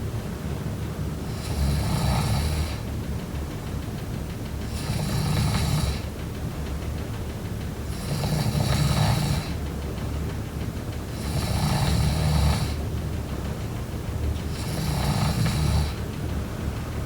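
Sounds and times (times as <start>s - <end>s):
person snoring: 8.0s - 9.5s, 11.2s - 12.8s, 14.6s - 16.0s.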